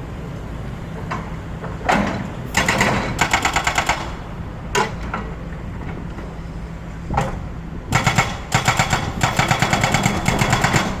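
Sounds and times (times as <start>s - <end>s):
excavator engine running: 0.0s - 11.0s
hydraulic breaker hammering: 7.2s - 11.0s.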